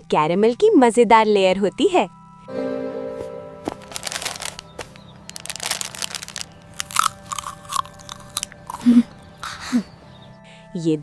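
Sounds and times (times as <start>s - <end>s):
crunching chocolate bar: 3.7s - 10.3s.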